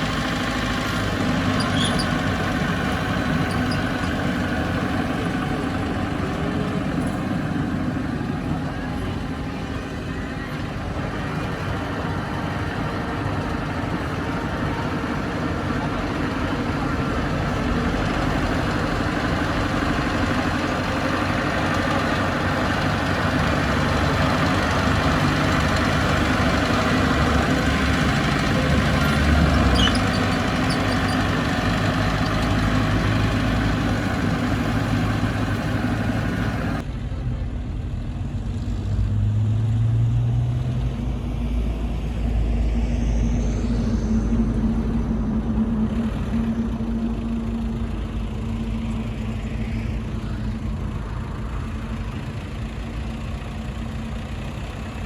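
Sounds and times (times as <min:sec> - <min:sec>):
bulldozer diesel engine running: 0:00.0 - 0:38.7, 0:40.9 - 0:55.0.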